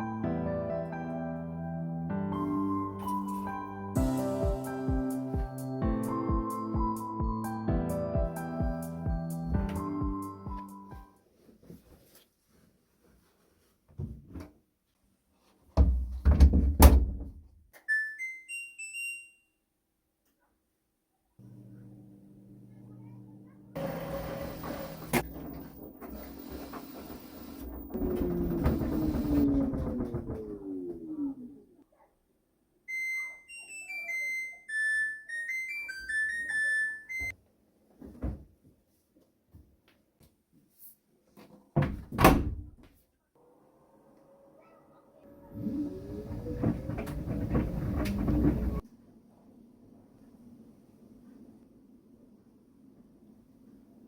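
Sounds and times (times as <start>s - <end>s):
appliance beeper melody: 32.9s - 37.3s.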